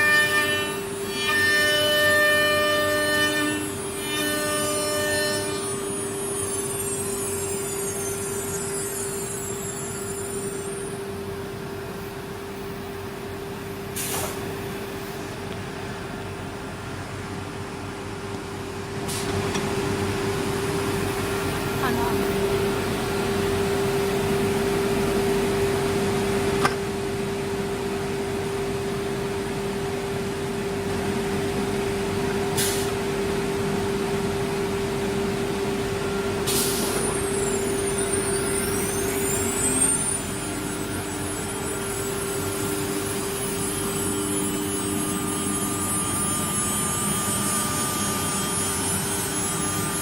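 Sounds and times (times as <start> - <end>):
cnc router humming: 0.0 - 14.0, 19.5 - 50.0
high whine falling in pitch: 37.0 - 50.0
machine hum: 37.1 - 50.0.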